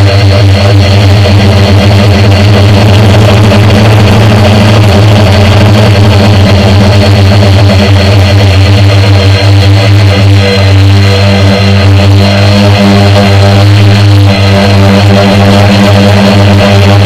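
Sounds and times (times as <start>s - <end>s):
drone motors and propellers droning: 0.0s - 17.0s.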